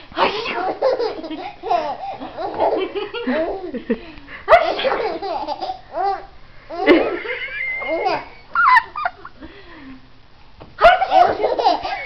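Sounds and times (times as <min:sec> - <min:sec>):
baby laughing: 0:00.2 - 0:03.8, 0:04.6 - 0:09.0, 0:10.8 - 0:12.0
adults laughing: 0:06.8 - 0:09.4.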